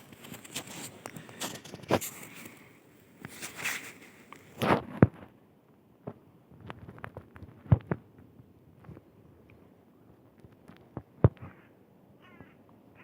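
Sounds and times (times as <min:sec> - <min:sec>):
footsteps on forest path: 0:00.0 - 0:04.6.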